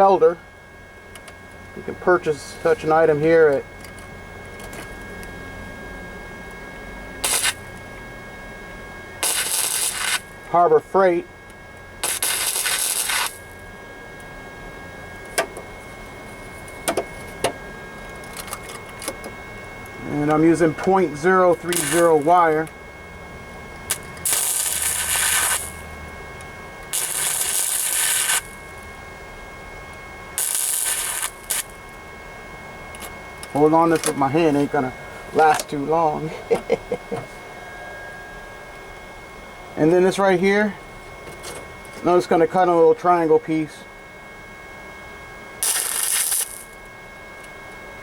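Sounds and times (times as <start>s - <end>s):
faint steady hum: 0.0s - 48.0s
welding arc crackle: 7.2s - 7.8s, 9.2s - 10.5s, 12.0s - 13.7s, 21.1s - 22.7s, 23.8s - 26.0s, 26.8s - 28.9s, 30.3s - 32.0s, 45.6s - 46.9s.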